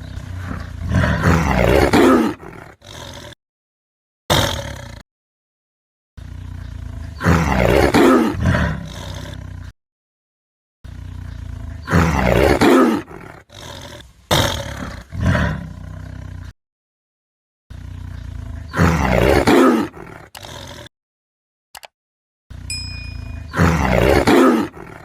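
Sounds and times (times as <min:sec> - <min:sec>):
big cat roaring: 0:00.0 - 0:03.4, 0:04.3 - 0:05.0, 0:06.2 - 0:09.7, 0:10.9 - 0:16.5, 0:17.7 - 0:20.9, 0:23.5 - 0:25.0.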